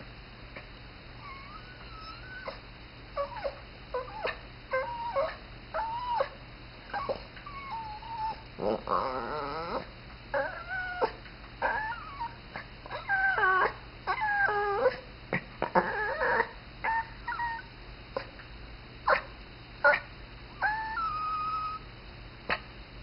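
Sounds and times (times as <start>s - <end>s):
dog squeaking: 1.2s - 2.6s, 20.6s - 21.8s
dog whining: 1.2s - 2.6s, 3.2s - 18.3s, 20.6s - 21.9s.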